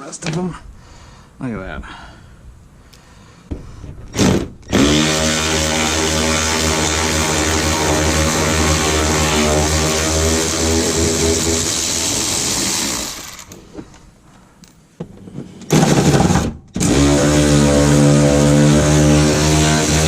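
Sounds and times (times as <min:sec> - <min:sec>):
power drill running: 0:04.1 - 0:13.6, 0:16.8 - 0:20.0.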